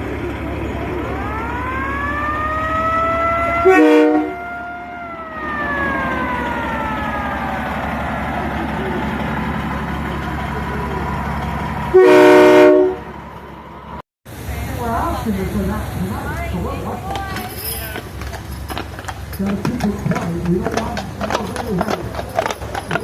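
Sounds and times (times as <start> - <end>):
low engine rumble: 0.0 - 23.0
fire truck siren winding: 0.9 - 8.7
air horn blast: 3.6 - 4.6, 11.9 - 13.1.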